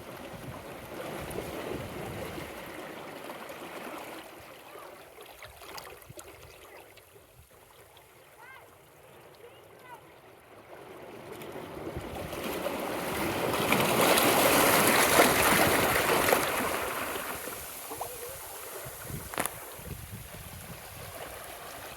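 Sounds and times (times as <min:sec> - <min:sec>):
sea wave washing over rocks: 0:12.3 - 0:21.9.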